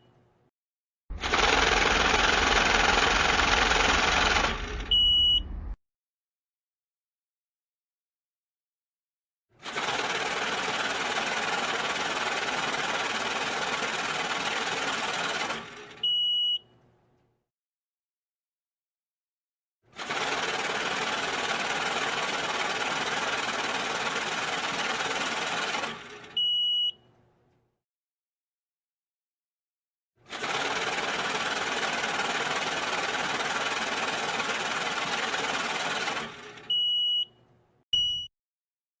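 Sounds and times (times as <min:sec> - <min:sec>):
banknote counting machine running: 0:01.2 - 0:04.8, 0:09.6 - 0:16.0, 0:20.0 - 0:26.4, 0:30.3 - 0:36.7
high electronic beep: 0:04.9 - 0:05.5, 0:38.0 - 0:38.3.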